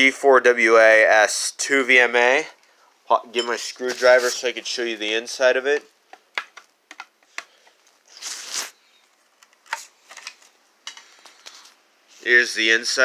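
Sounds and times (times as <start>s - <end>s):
scraping rustle: 3.6s - 4.5s.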